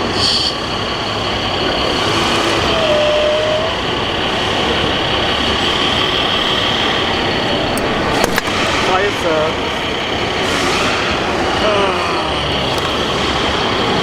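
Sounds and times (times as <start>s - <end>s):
dense mechanical rumble: 4.2s - 14.0s.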